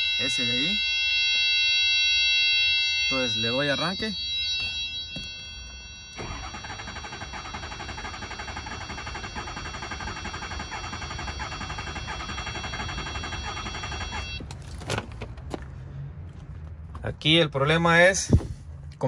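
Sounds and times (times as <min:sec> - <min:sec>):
high electronic tone: 0:00.0 - 0:14.4
diesel engine cranking: 0:05.6 - 0:16.7.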